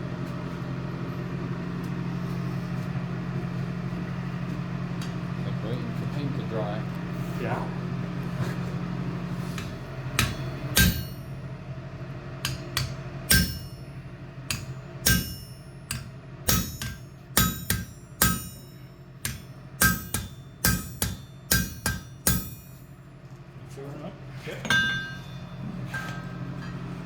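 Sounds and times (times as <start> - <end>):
steady low hum: 0.0 - 27.0
hammer striking steel on anvil: 9.6 - 11.5, 12.4 - 22.9, 24.6 - 26.9.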